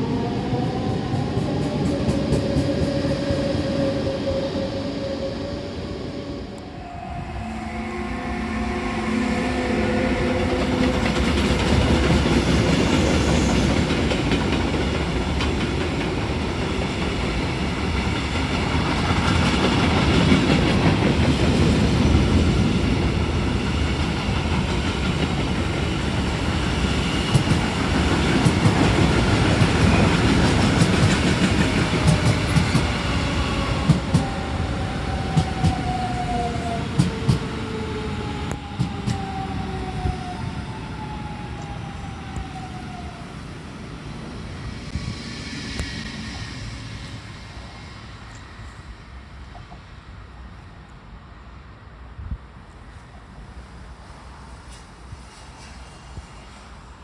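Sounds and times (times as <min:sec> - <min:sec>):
train rolling rumble: 0:00.0 - 0:57.0
wheels clicking over rail joints: 0:27.3 - 0:33.0.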